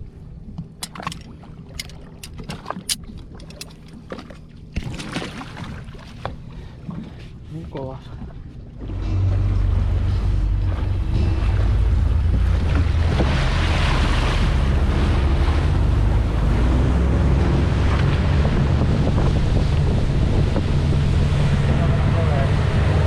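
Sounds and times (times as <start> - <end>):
boat engine running: 0.0 - 23.0
water splashing against hull: 0.0 - 23.0
wind on microphone: 8.8 - 23.0.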